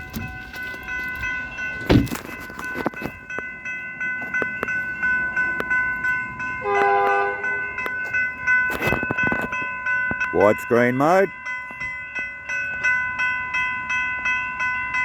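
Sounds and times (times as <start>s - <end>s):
level-crossing warning bell: 0.0s - 15.0s
train horn blast: 6.6s - 7.7s.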